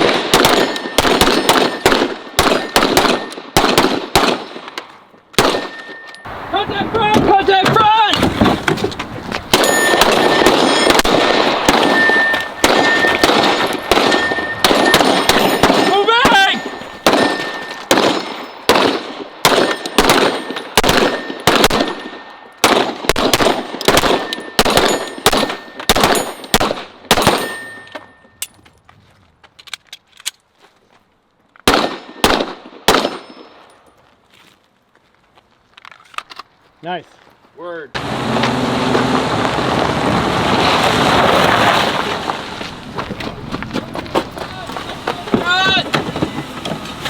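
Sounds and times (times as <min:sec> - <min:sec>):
handgun shots: 0:05.4 - 0:06.0.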